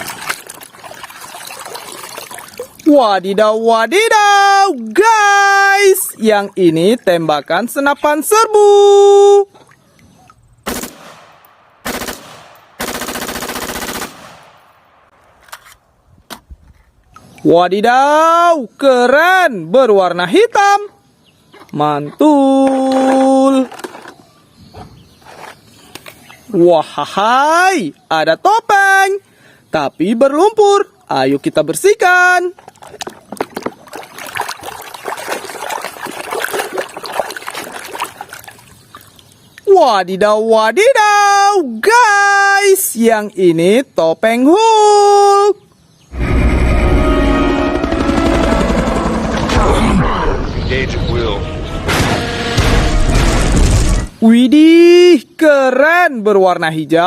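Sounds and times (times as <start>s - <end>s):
water trickling and splashing: 0.0s - 8.3s, 8.9s - 10.6s, 17.0s - 17.5s, 22.4s - 24.3s, 32.3s - 39.8s.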